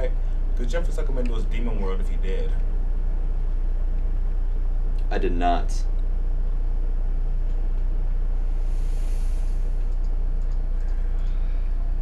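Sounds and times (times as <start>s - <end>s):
low electrical hum: 0.0s - 12.0s
faint hiss: 8.5s - 9.9s.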